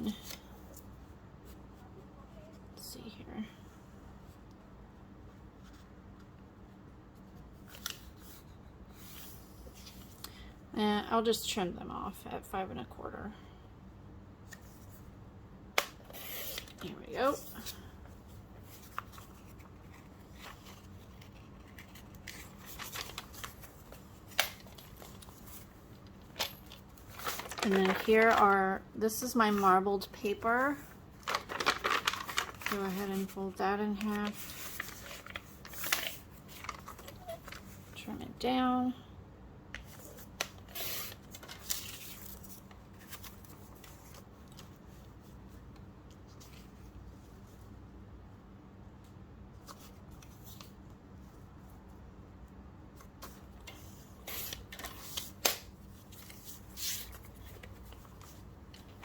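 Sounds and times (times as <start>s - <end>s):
paper rustling: 16.2s - 38.0s, 39.8s - 45.3s, 53.1s - 59.0s.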